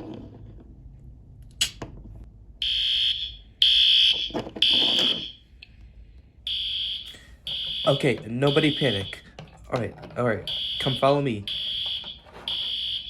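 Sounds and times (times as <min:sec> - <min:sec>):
fire alarm beeps: 0:02.6 - 0:05.4, 0:06.5 - 0:09.3, 0:10.5 - 0:13.0.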